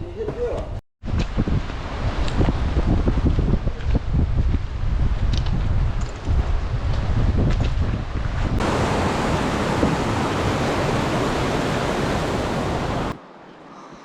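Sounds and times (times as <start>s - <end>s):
wind buffeting microphone: 1.0s - 13.2s
fast-flowing river water: 8.6s - 13.2s.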